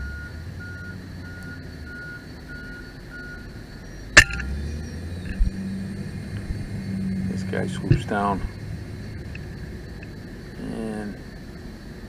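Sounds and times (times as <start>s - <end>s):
reversing alarm beeps: 0.0s - 5.0s
low engine hum: 0.0s - 12.0s.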